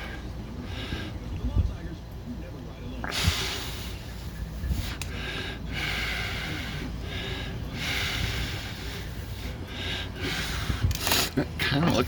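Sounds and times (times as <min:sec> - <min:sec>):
man breathing hard: 0:00.0 - 0:01.3, 0:03.2 - 0:11.4.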